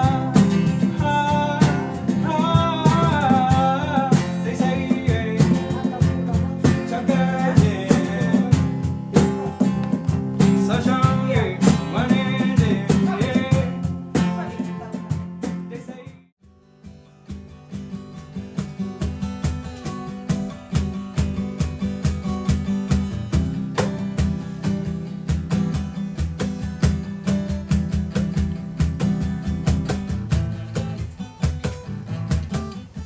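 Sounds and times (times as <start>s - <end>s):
person singing: 0.0s - 16.1s
strummed acoustic guitar: 0.0s - 33.0s.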